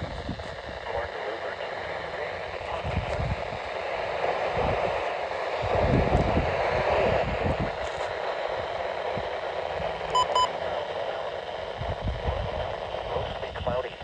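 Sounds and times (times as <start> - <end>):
radio static hiss: 0.0 - 14.0
short sharp beeps: 10.1 - 10.5.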